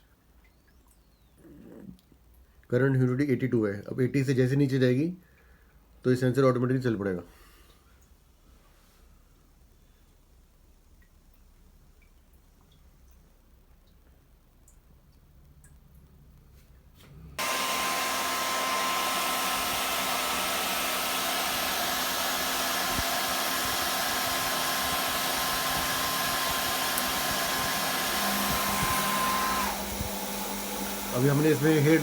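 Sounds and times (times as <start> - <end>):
hair dryer running: 17.4 - 32.0.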